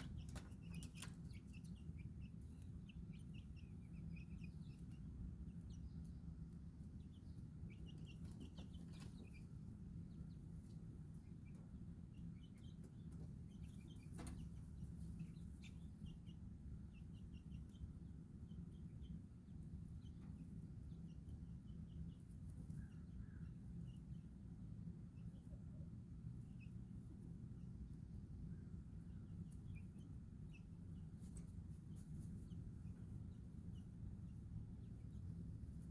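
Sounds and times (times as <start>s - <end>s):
baby chicks peeping: 0.0s - 35.9s.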